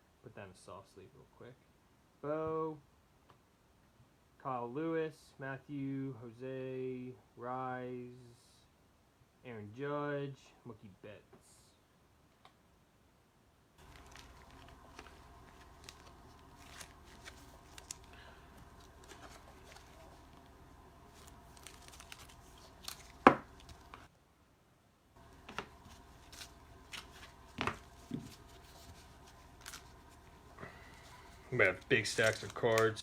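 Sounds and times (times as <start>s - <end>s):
cards sliding and tapping: 13.8s - 24.1s, 25.2s - 30.7s
card snapping: 21.1s - 24.1s.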